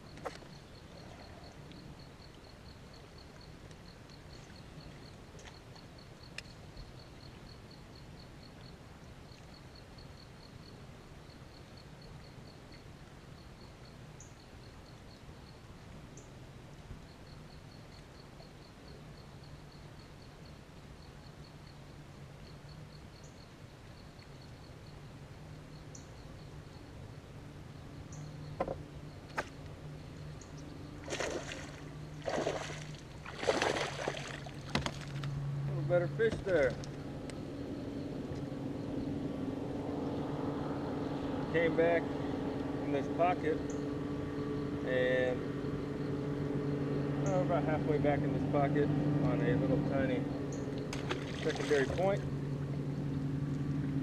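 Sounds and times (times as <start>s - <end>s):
insect chirping: 0.0s - 54.0s
low steady hum: 0.0s - 54.0s.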